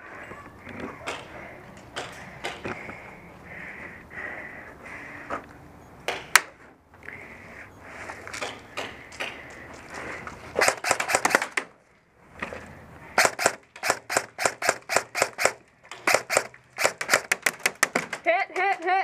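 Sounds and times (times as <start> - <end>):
airsoft guns firing: 10.6 - 11.7, 13.2 - 18.2.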